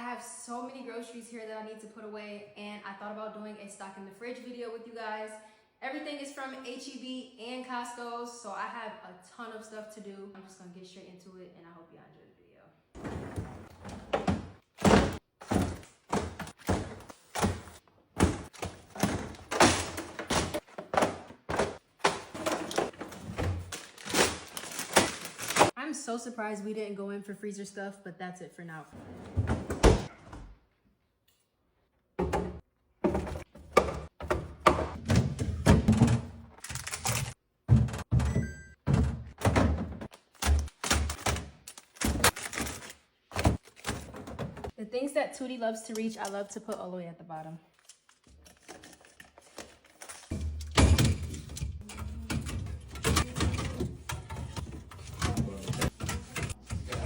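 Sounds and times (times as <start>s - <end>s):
groceries thunking on shelves: 13.0s - 25.8s, 32.2s - 44.8s, 50.3s - 57.0s.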